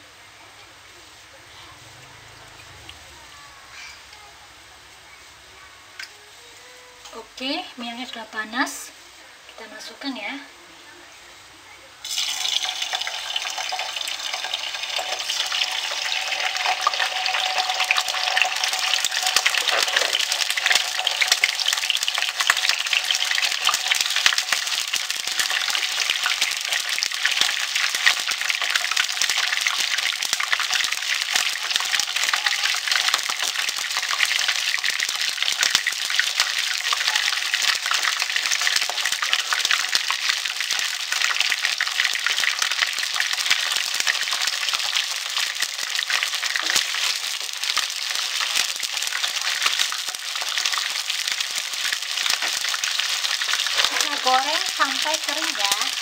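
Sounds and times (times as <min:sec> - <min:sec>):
chicken skin sizzling in hot oil: 0:12.0 - 0:56.0.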